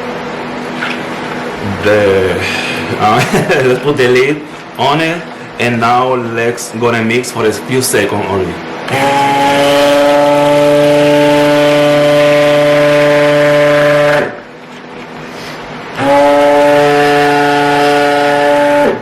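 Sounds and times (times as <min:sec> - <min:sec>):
electric blender motor running: 0:08.7 - 0:14.5, 0:15.8 - 0:19.0.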